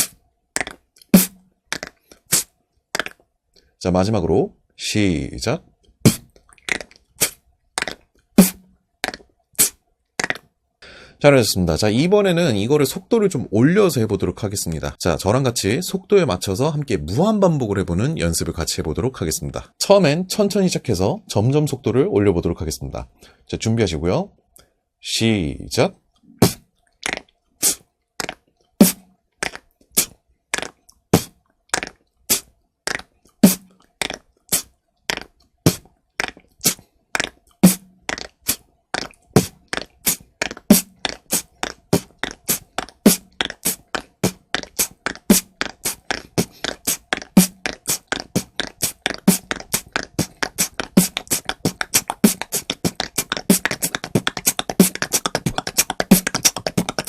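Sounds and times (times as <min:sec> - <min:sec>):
beatboxing beat: 0:00.0 - 0:03.2, 0:06.0 - 0:10.5, 0:26.3 - 0:57.0.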